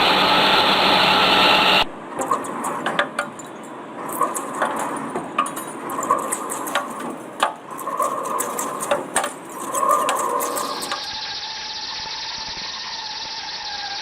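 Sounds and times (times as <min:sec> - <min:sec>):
lathe cutting metal: 0:00.0 - 0:03.4, 0:04.0 - 0:11.5.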